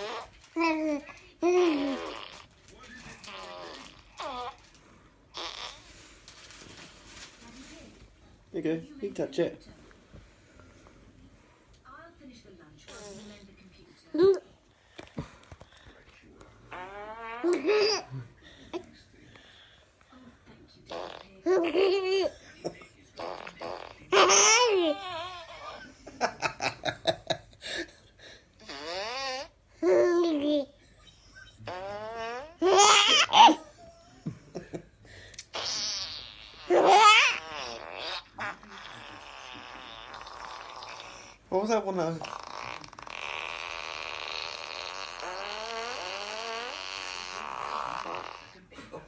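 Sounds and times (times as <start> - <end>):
fart sound effect: 0.0 - 0.3, 1.6 - 2.5, 3.2 - 4.6, 5.3 - 6.0, 16.7 - 18.0, 20.9 - 21.2, 23.2 - 25.6, 28.6 - 29.5, 31.6 - 33.6, 35.5 - 41.4, 42.2 - 48.6
baby belly-laughing: 31.6 - 33.6, 35.6 - 41.0.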